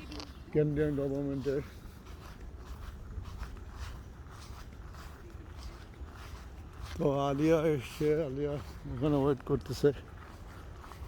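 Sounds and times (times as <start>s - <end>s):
footsteps on a path: 0.0s - 11.0s.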